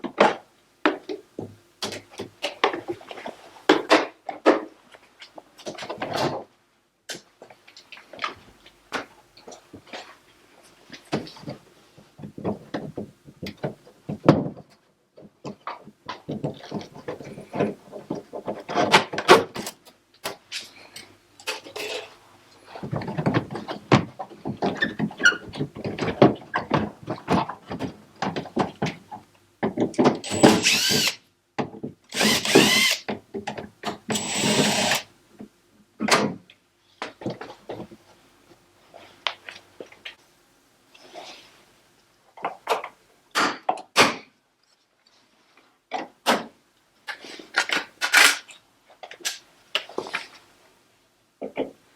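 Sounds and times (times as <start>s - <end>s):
power drill-driver whine: 30.2s - 31.2s, 32.1s - 33.1s, 34.1s - 35.1s
clicks and clatter of parts: 47.0s - 50.4s.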